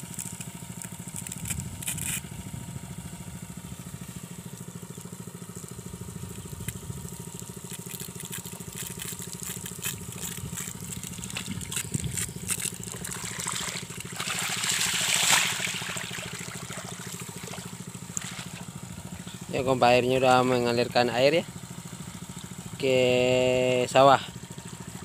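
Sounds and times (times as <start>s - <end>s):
water pump engine running: 0.0s - 25.0s
water spattering: 5.6s - 18.7s.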